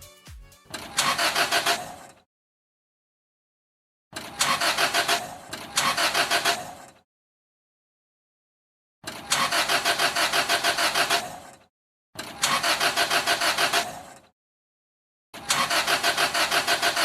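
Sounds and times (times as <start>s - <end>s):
car engine cranking: 0.7s - 2.2s, 4.2s - 7.0s, 9.0s - 11.6s, 12.2s - 14.3s, 15.4s - 17.0s.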